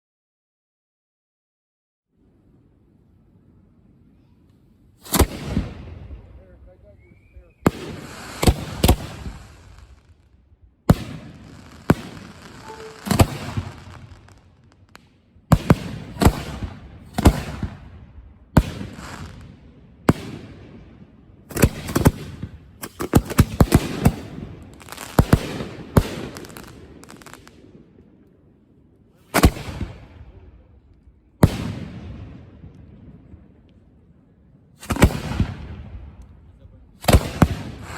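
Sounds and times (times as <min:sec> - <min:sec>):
firework shells booming and crackling: 0:05.0 - 0:10.2, 0:10.9 - 0:27.9, 0:29.3 - 0:33.7, 0:34.8 - 0:37.9.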